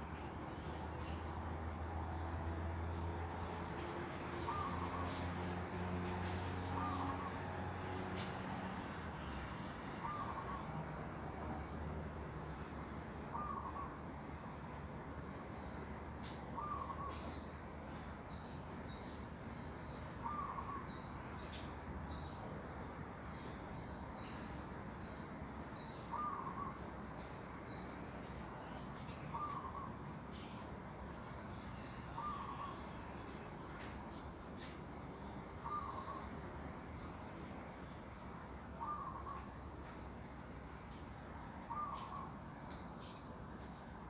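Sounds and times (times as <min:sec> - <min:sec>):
small birds chirping high: 0:28.7 - 0:33.6, 0:40.9 - 0:43.8.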